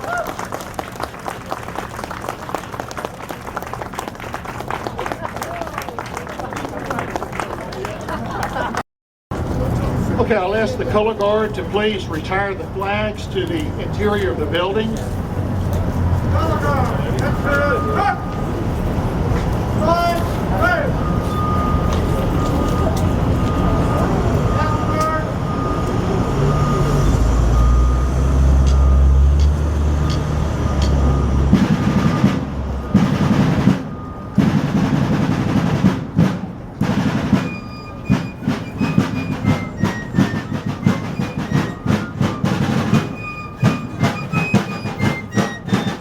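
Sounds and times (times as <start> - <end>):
snare drum marching cadence: 31.5 - 46.0
short high notes: 37.3 - 46.0.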